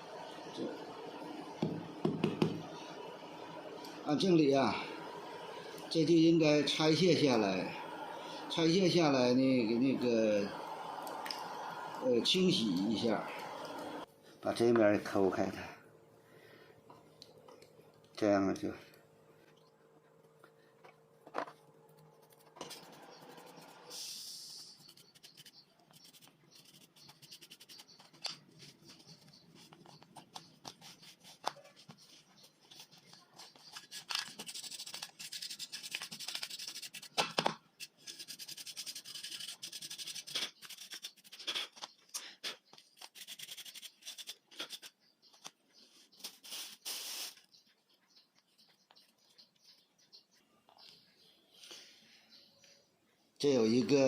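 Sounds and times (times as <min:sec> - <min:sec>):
hands scraping sander parts: 0:24.6 - 0:47.4.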